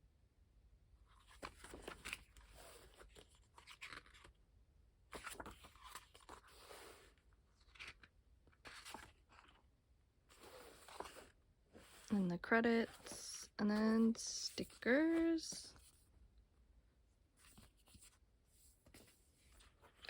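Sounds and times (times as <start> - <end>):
paper rustling and crinkling: 1.2 - 4.4, 5.1 - 9.6, 10.3 - 12.1.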